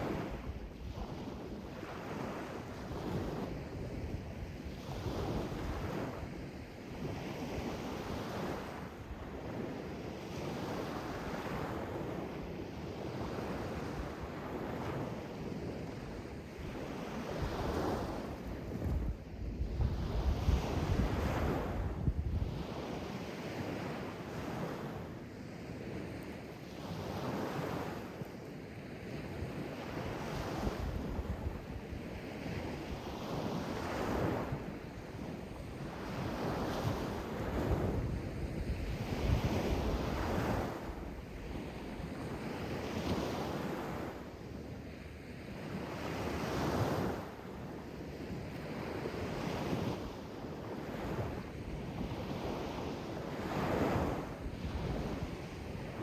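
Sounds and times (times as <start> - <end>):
wind buffeting microphone: 17.3 - 22.9, 32.5 - 41.9, 53.5 - 56.0.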